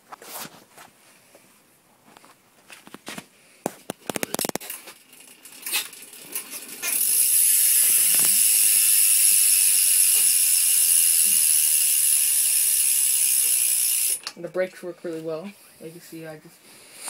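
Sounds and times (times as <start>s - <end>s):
bike freewheel hub ratcheting: 3.7s - 14.8s.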